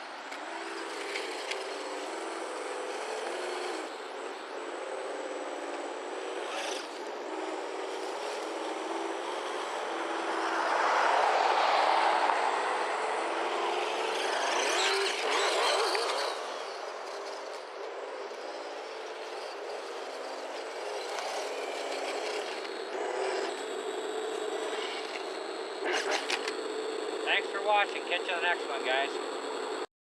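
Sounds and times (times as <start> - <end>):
rising glides: 0.0 - 27.3
simulated engine sound from speaker: 0.0 - 29.9
rush of noise: 6.4 - 17.9.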